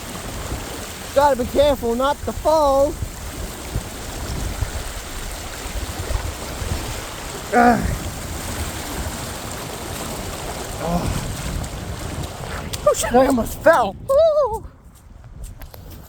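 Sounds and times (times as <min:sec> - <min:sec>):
flooded creek rushing: 0:00.0 - 0:14.9
short vocal sound: 0:07.5 - 0:08.0.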